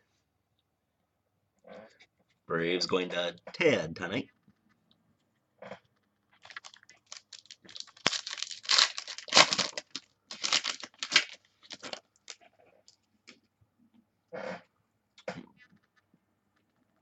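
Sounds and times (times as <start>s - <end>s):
foil wrapper crinkling and tearing: 6.4s - 12.4s.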